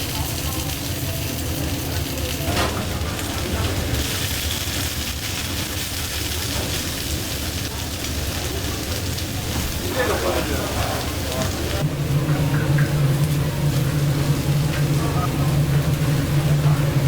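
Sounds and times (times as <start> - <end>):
wood fire crackling and hissing: 0.0 - 17.0.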